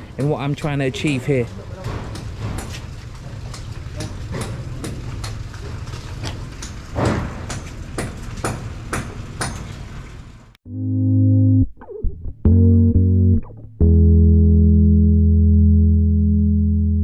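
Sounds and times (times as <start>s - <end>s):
regular knocking: 0.0s - 9.7s.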